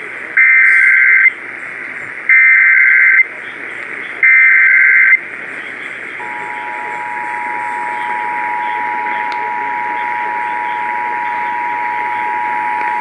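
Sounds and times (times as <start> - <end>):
radio hiss: 0.0 - 13.0
digital data tone bursts: 0.4 - 1.3, 2.3 - 3.3, 4.2 - 5.2, 6.2 - 13.0.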